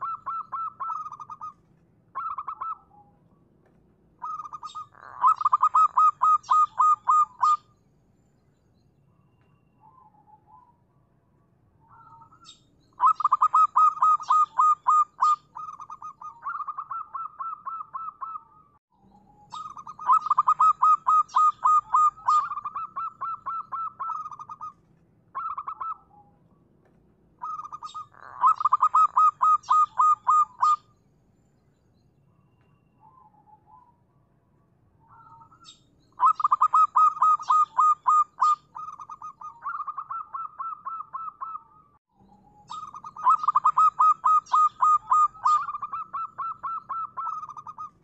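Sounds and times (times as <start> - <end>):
dove cooing: 0.0 - 1.6, 2.2 - 3.1, 4.2 - 7.6, 11.9 - 18.6, 19.4 - 24.8, 25.4 - 26.3, 27.4 - 30.8, 35.1 - 48.0.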